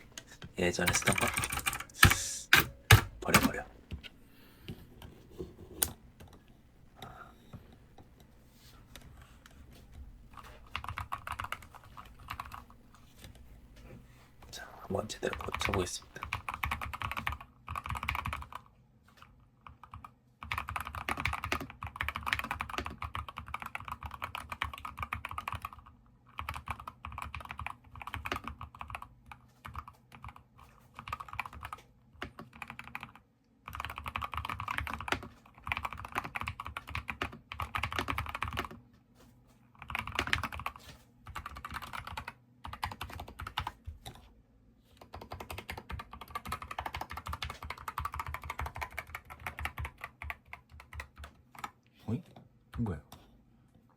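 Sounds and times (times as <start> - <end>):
fast keyboard typing: 0.0 - 4.0, 10.2 - 13.4, 14.9 - 38.8, 39.7 - 44.2, 44.9 - 51.8.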